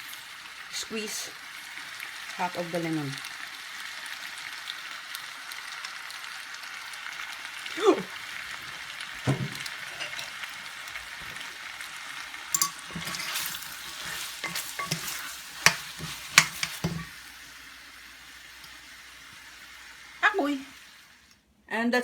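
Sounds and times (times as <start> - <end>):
food sizzling in a frying pan: 0.0 - 21.6
utensil knocking against a pan: 9.2 - 10.3, 14.4 - 17.1.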